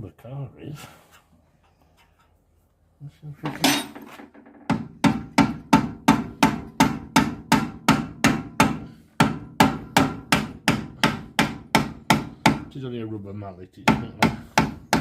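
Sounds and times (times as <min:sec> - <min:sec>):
rubber mallet striking metal: 0:04.7 - 0:12.6.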